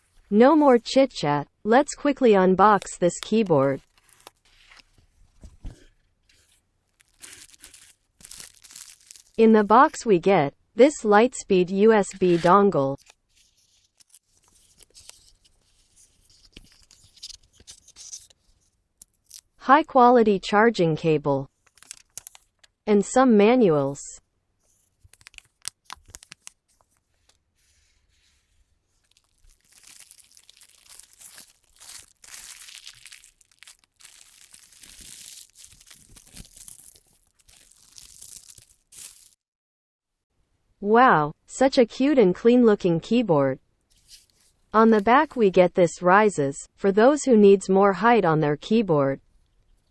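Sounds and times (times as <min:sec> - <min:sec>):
paper and plastic rustling: 0:02.7 - 0:10.0, 0:12.1 - 0:18.8, 0:21.5 - 0:22.7, 0:24.6 - 0:39.4, 0:43.9 - 0:45.4.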